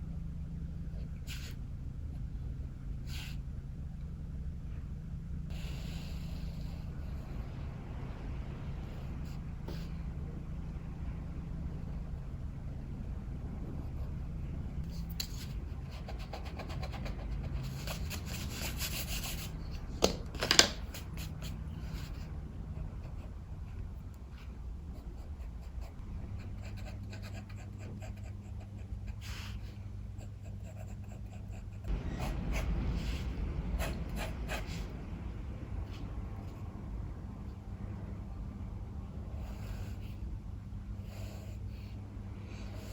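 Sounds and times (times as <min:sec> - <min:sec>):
pencil scratching on paper: 0:14.9 - 0:19.9, 0:30.2 - 0:34.9
strong wind rumble: 0:31.9 - 0:39.4.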